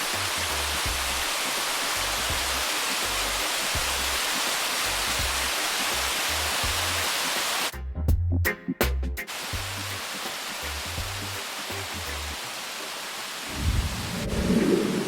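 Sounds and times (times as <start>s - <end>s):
river rushing over rocks: 0.0s - 7.7s, 9.3s - 15.0s
background music with bass beat: 0.1s - 1.3s, 2.0s - 7.1s, 7.7s - 10.0s.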